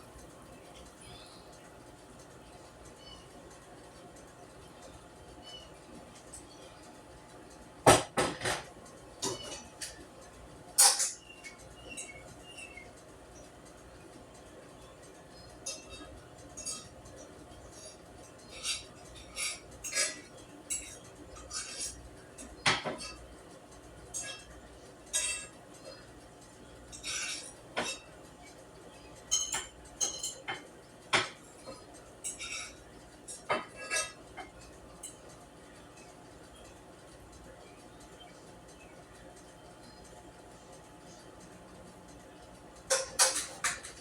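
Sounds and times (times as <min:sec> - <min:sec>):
dishes and utensils clinking: 0:07.9 - 0:10.0, 0:10.8 - 0:12.8, 0:15.6 - 0:17.0, 0:17.8 - 0:23.2, 0:24.1 - 0:24.5, 0:25.1 - 0:26.0, 0:26.9 - 0:28.1, 0:29.2 - 0:35.3, 0:42.8 - 0:44.0.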